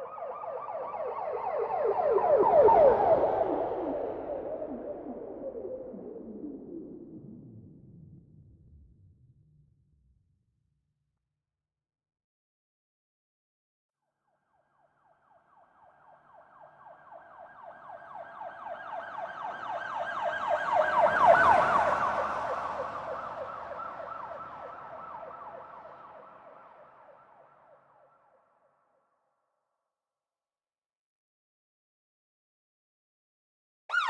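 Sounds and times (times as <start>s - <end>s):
police siren yelp: 0.0s - 6.1s, 15.1s - 27.5s
road noise rush: 20.6s - 25.2s.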